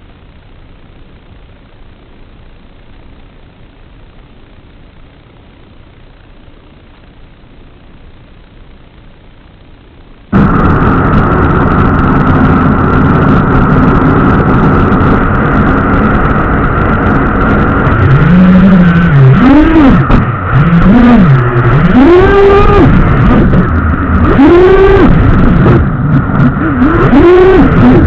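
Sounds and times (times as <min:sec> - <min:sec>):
quadcopter motors humming: 0:10.4 - 0:28.0.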